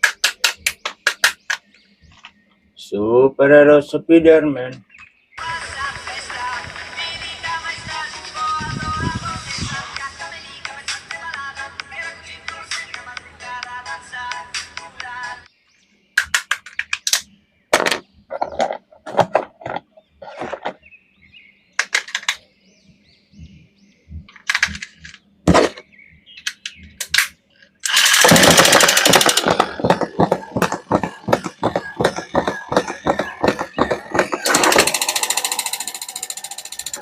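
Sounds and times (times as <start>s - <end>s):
plastic toys clicking and knocking: 0.0s - 1.6s, 16.2s - 17.2s, 21.8s - 22.4s, 24.3s - 25.8s, 26.4s - 37.0s
fast rattle of clicks: 26.4s - 37.0s.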